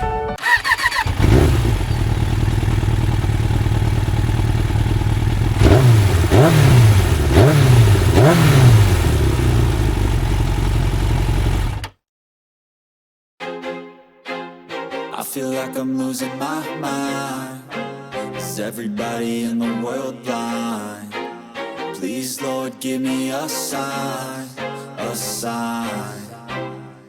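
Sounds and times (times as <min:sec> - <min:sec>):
motorcycle engine idling and revving: 0:00.4 - 0:11.9.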